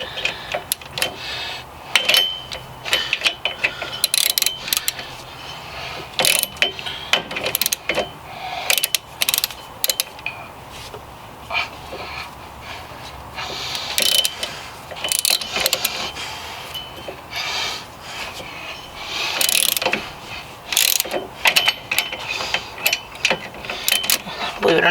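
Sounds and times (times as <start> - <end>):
ratchet wrench clicking: 0.0 - 1.2, 2.0 - 5.1, 6.2 - 10.3, 13.7 - 16.9, 19.3 - 20.0, 20.7 - 24.3
metallic clinks: 2.0 - 5.0, 14.0 - 17.2.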